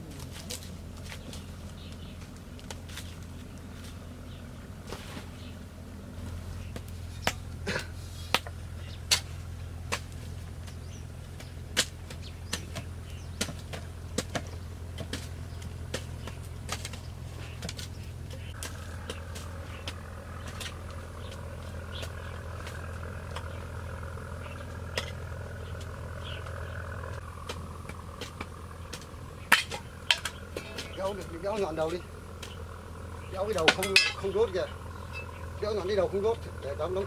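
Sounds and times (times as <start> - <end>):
steady low hum: 0.0 - 37.0
hand tool knocking bamboo: 33.4 - 34.4.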